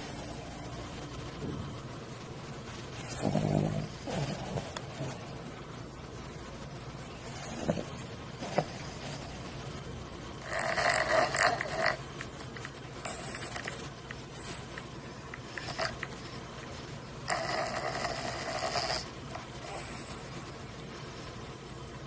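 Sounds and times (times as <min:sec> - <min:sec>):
rasping snores: 0:03.1 - 0:05.2, 0:10.4 - 0:12.0, 0:13.0 - 0:14.6, 0:15.6 - 0:16.0, 0:17.3 - 0:20.0.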